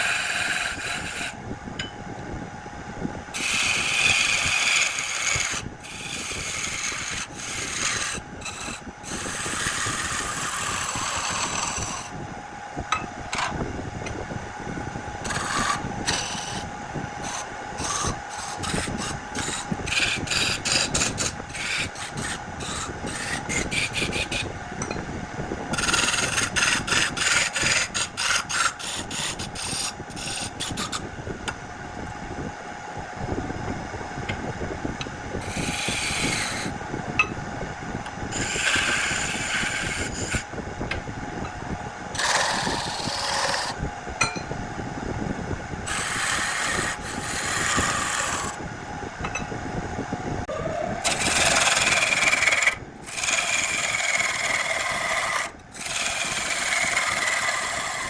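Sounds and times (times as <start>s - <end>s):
tool scraping spinning wood: 0.0s - 1.4s, 3.3s - 12.2s, 15.2s - 25.0s, 25.7s - 31.2s, 35.4s - 36.8s, 38.1s - 40.5s, 42.1s - 44.4s, 45.8s - 48.6s, 50.5s - 58.0s
lathe motor hum: 0.0s - 1.9s, 3.3s - 12.2s, 12.9s - 25.1s, 25.7s - 31.6s, 33.6s - 37.3s, 38.0s - 41.5s, 42.1s - 44.4s, 45.8s - 48.6s, 50.4s - 58.0s.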